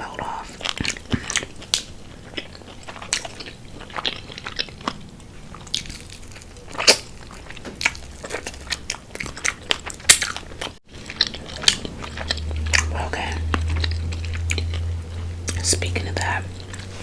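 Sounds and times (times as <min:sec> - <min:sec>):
chewing and crunching fried chicken: 0:00.0 - 0:17.0
mouth sounds: 0:11.8 - 0:17.0.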